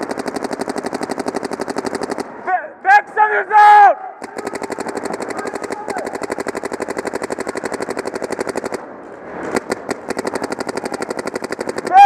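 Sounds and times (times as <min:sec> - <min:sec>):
paintball marker rapid firing: 0:00.0 - 0:02.4, 0:04.2 - 0:08.9, 0:09.5 - 0:12.0.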